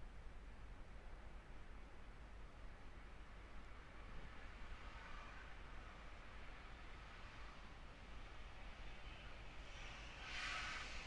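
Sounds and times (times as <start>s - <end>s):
faint hiss: 4.3s - 11.0s.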